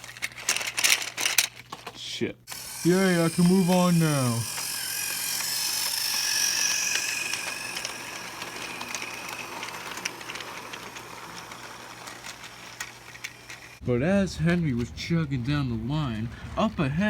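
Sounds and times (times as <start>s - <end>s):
toy train motor whining: 0.0s - 1.8s, 2.5s - 13.8s.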